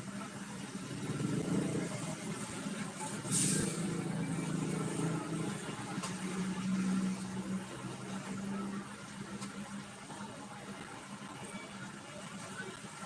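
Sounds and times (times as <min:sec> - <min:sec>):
diesel bus engine running: 0:00.0 - 0:13.0
short hiss: 0:03.1 - 0:03.9.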